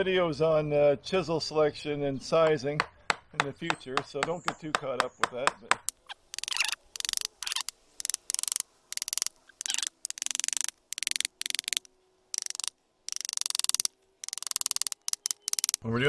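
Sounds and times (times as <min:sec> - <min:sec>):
hand tool scratching wood: 0:03.4 - 0:15.8.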